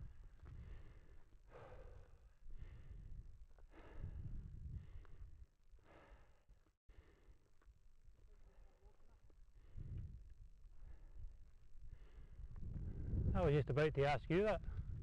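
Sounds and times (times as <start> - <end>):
person breathing heavily: 0.4 - 7.5, 9.6 - 13.2.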